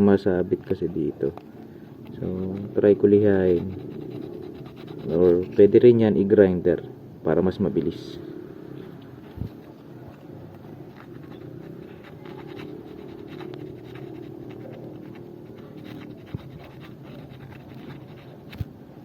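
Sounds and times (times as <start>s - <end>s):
hand file rasping on brake pad: 3.1s - 5.7s, 10.5s - 18.6s.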